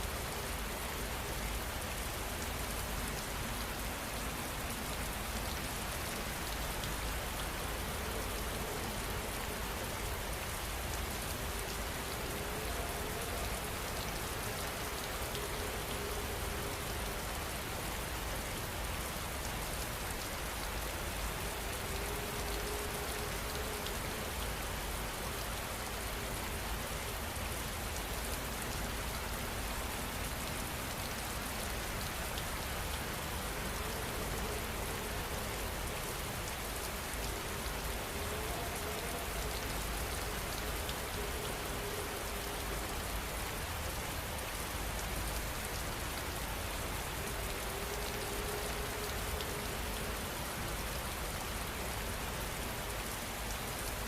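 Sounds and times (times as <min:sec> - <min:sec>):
heavy rain falling: 0:00.0 - 0:54.0.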